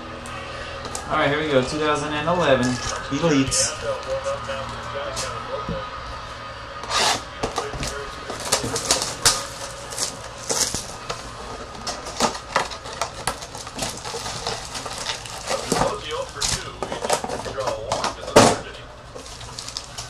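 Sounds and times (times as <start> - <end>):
cards shuffling and tapping: 7.4 - 18.5
foil packs tearing and crinkling: 7.5 - 18.4, 19.1 - 20.0.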